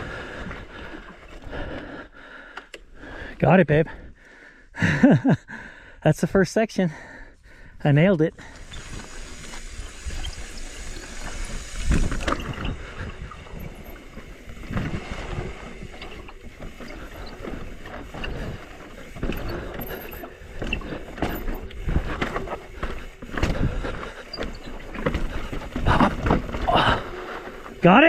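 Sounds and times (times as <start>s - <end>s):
bike knocking and rattling on rock: 8.6s - 28.0s.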